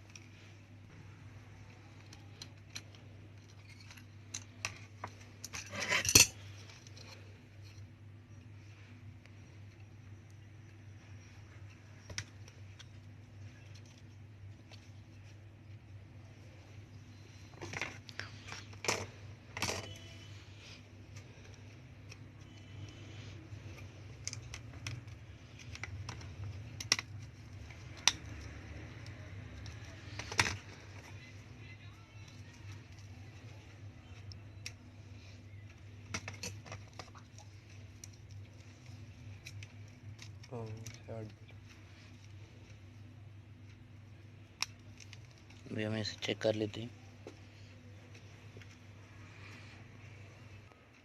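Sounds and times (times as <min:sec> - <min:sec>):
low electrical hum: 0:00.0 - 0:51.0
tools and phone parts clicking: 0:01.8 - 0:07.9, 0:17.6 - 0:20.3, 0:21.1 - 0:31.3.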